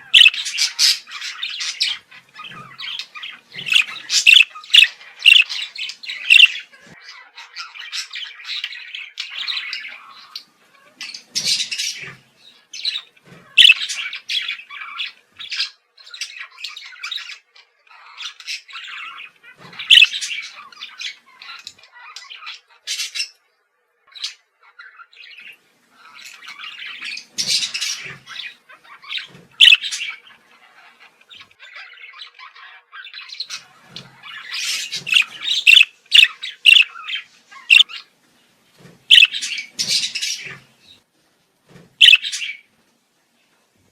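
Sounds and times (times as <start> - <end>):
budgerigars chattering: 0.0 - 23.4, 24.1 - 38.1, 39.1 - 41.0, 42.0 - 42.7
sharp loud squawks: 29.6 - 30.0, 34.6 - 37.0, 37.6 - 37.9, 42.0 - 42.6.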